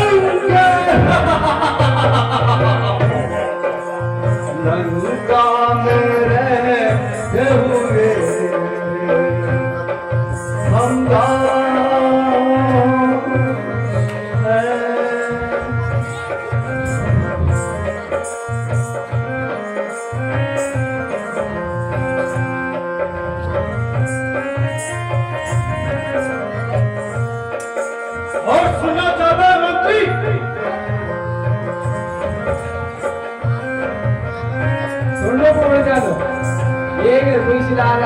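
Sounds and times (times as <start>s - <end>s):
hand drum rhythm: 0.0s - 29.2s
gliding held melody: 0.0s - 38.0s.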